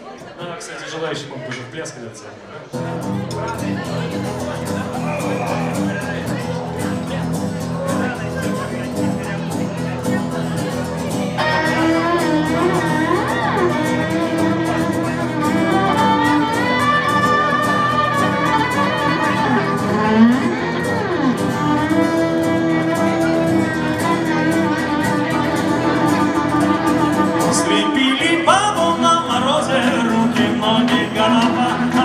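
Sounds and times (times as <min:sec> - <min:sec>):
guitar accompaniment: 0:02.7 - 0:32.0
violin melody: 0:11.4 - 0:32.0.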